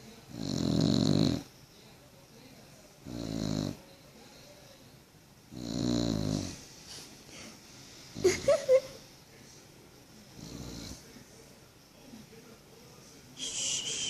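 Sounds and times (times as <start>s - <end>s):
dog snoring: 0.3s - 1.5s, 3.0s - 3.8s, 5.5s - 6.6s, 10.3s - 11.1s.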